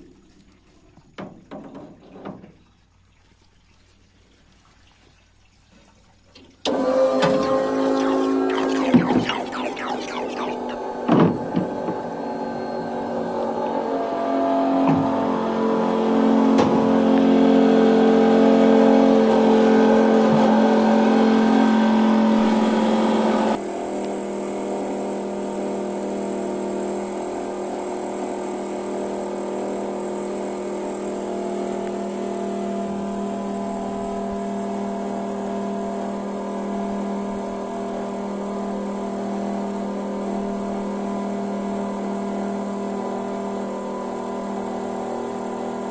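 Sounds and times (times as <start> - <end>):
thin high whine: 7.2 - 14.2.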